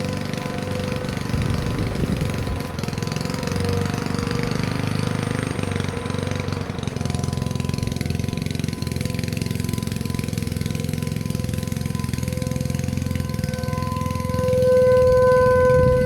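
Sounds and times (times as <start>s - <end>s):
tornado warning sirens: 0.0s - 16.0s
low fast-pulsing rumble: 1.0s - 2.8s, 13.3s - 16.0s.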